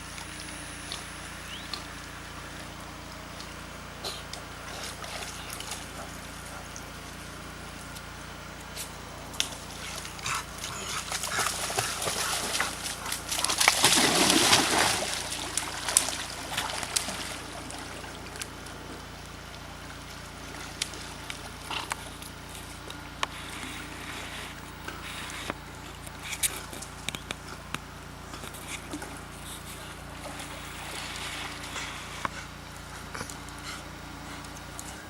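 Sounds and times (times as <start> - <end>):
dog splashing in water: 9.4 - 22.5.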